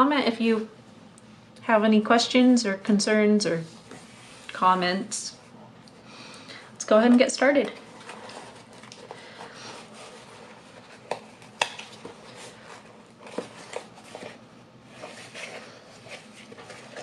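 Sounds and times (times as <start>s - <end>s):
box rustling: 7.6s - 17.0s.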